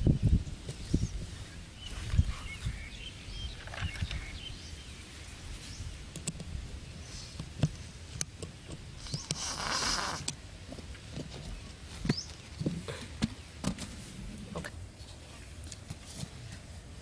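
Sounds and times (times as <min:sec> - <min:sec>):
scattered clicks: 0:06.1 - 0:06.5.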